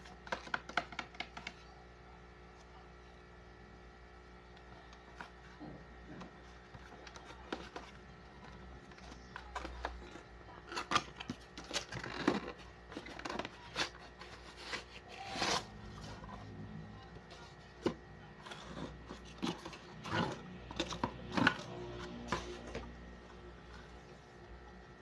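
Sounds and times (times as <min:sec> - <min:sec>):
packaging crinkling and rustling: 0:06.4 - 0:16.5.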